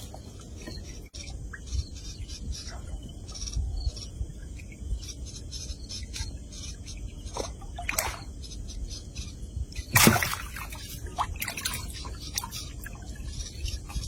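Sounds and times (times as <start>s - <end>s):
water dripping and sloshing: 6.0s - 8.5s, 9.7s - 14.0s
loud water splash: 9.9s - 10.8s.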